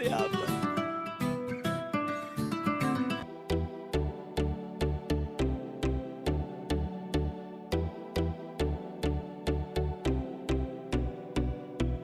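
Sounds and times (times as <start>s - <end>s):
plucked guitar-like notes: 0.0s - 3.2s.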